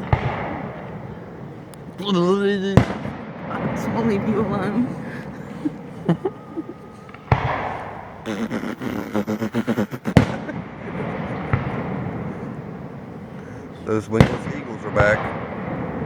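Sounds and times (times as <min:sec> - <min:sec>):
fireworks crackling: 0:00.0 - 0:16.0
firework shell bursting: 0:06.9 - 0:08.4.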